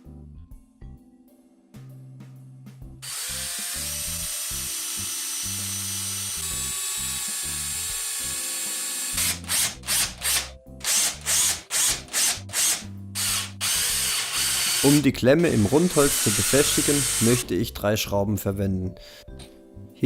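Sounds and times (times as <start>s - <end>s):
background music: 0.0s - 20.0s
power tool cutting wood: 3.0s - 17.4s.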